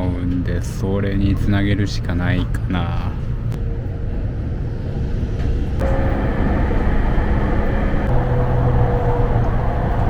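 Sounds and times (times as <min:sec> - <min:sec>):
train rumbling: 0:00.0 - 0:10.0
humming tones changing pitch: 0:05.7 - 0:10.0.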